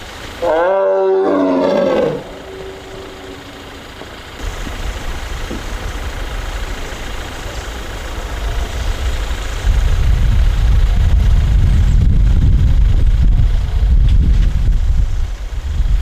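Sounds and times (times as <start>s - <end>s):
steady low rumble: 0.0s - 16.0s
tiger wavering call: 0.4s - 4.4s.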